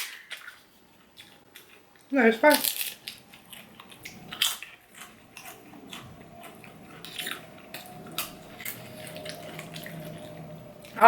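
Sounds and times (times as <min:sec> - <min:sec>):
crisp bites and chewing: 0:02.5 - 0:10.3.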